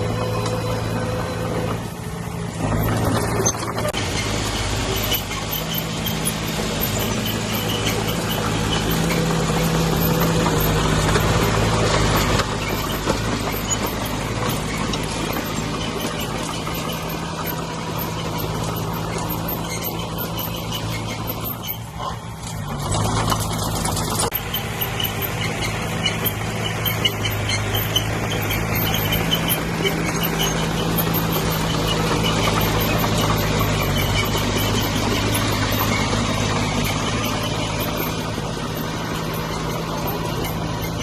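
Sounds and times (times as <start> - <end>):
heavy diesel engine running: 0.0 - 41.0.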